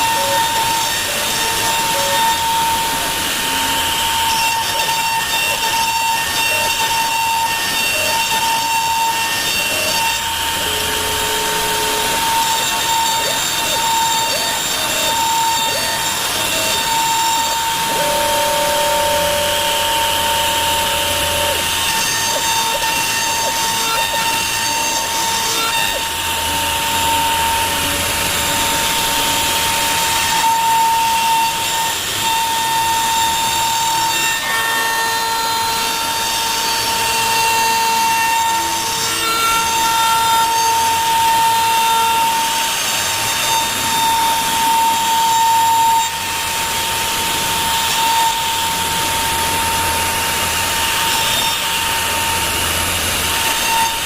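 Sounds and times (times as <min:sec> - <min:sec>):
short machine tones: 0:00.0 - 0:31.4
router spindle cutting wood: 0:00.0 - 0:54.0.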